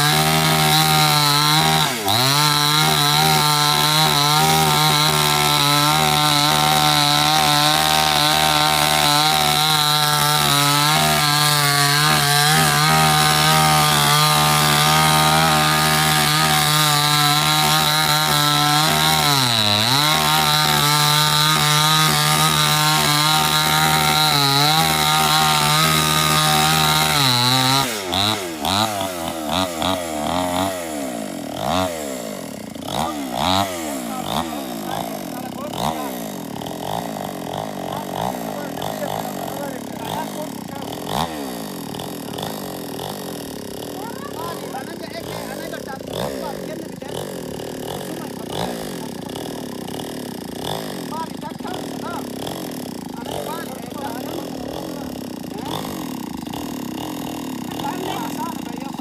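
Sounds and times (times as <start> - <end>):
chainsaw cutting wood: 0.0 - 59.0.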